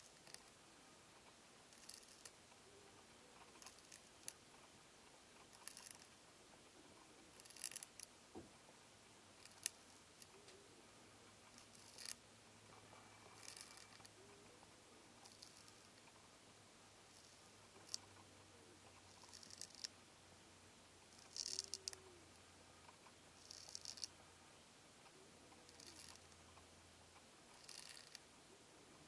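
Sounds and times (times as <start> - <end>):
snail rasping on a leaf: 0.0 - 0.6, 1.7 - 2.4, 3.4 - 4.4, 5.3 - 6.1, 7.3 - 8.1, 9.3 - 10.4, 11.5 - 12.2, 13.2 - 14.2, 15.2 - 16.2, 17.0 - 18.1, 19.0 - 20.0, 21.1 - 22.0, 22.9 - 24.1, 25.6 - 26.4, 27.5 - 28.2.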